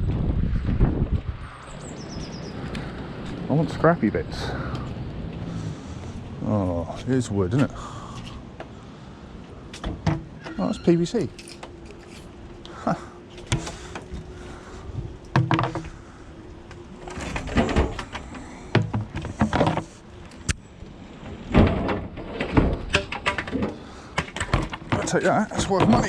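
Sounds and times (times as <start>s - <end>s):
faint steady hum: 1.5s - 26.0s
hard plastic knocking and scraping: 15.3s - 16.0s, 17.2s - 20.0s, 21.5s - 26.0s.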